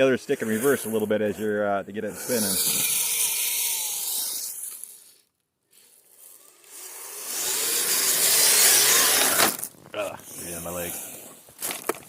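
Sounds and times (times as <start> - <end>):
electric motor whine: 6.1 - 9.7.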